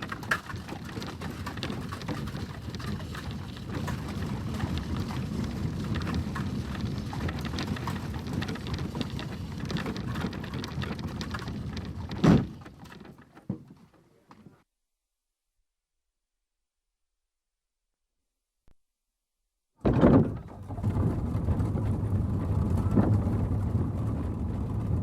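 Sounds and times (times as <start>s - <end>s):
clicks of wheels and hooves: 0.0s - 14.6s, 20.2s - 25.0s
horse-drawn stagecoach rumbling: 0.0s - 14.6s, 19.9s - 25.0s
loud low thump: 19.8s - 23.5s.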